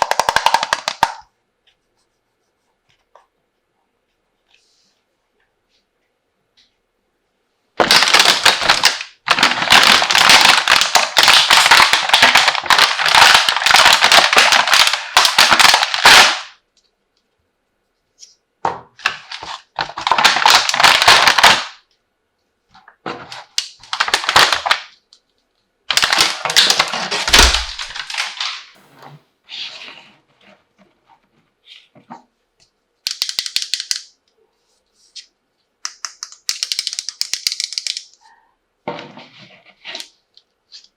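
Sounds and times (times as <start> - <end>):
plastic toy pieces clattering: 0.0 - 1.2, 25.9 - 28.7, 33.0 - 34.1, 35.9 - 38.2
packaging crinkling: 7.8 - 16.5, 19.0 - 21.8, 23.4 - 24.9, 25.9 - 28.7.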